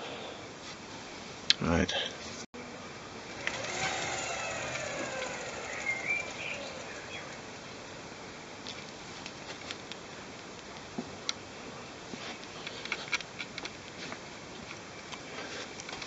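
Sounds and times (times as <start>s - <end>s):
motor rotor whirring: 3.2s - 8.0s.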